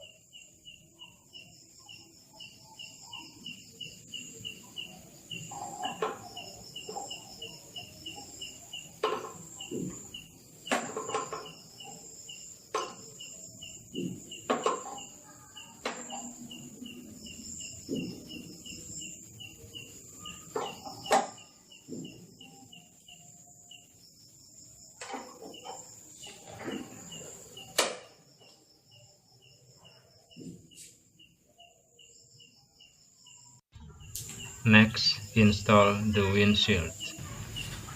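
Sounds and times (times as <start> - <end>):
insects chirping: 0.0 - 37.9
tools knocking on scooter parts: 5.8 - 7.2, 8.8 - 10.1, 10.7 - 11.8, 12.7 - 13.2, 13.9 - 15.1.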